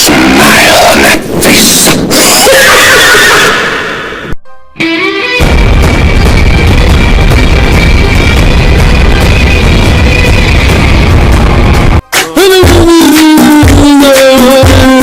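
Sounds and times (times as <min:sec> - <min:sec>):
music with heavy bass: 0:05.4 - 0:15.0.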